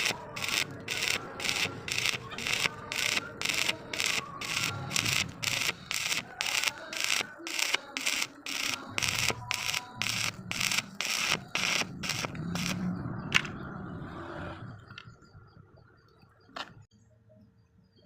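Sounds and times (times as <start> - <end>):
hand tool filing metal: 0.0 - 12.8.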